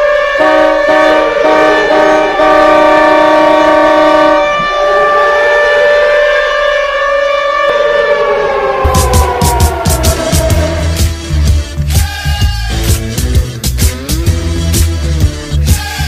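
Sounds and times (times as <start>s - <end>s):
hockey goal horn blowing: 0.0s - 7.9s.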